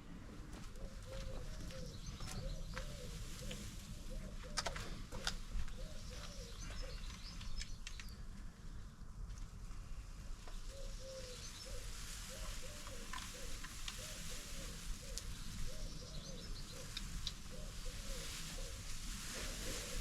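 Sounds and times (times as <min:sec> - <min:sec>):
steady background hiss: 0:00.0 - 0:20.0
pigeon cooing: 0:00.4 - 0:07.2, 0:10.6 - 0:20.0
bird chirps: 0:05.7 - 0:08.2, 0:15.1 - 0:18.3.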